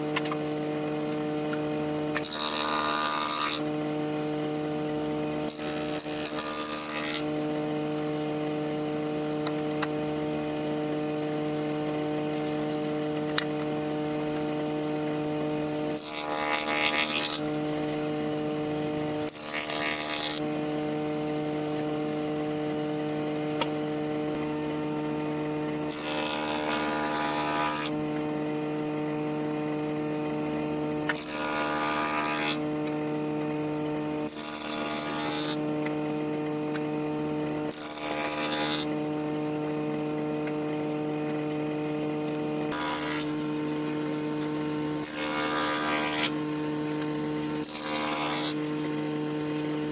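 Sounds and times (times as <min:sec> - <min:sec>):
machine cutting into wood: 0:00.0 - 0:03.8, 0:05.1 - 0:20.7, 0:25.7 - 0:28.4, 0:31.0 - 0:33.5, 0:34.1 - 0:49.9
woodworking machine motor humming: 0:00.0 - 0:49.9.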